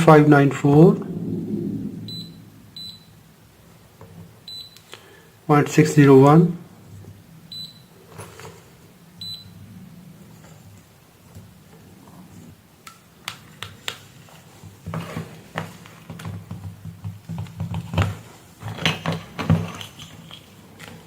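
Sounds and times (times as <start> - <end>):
low electrical hum: 0.0 - 14.5.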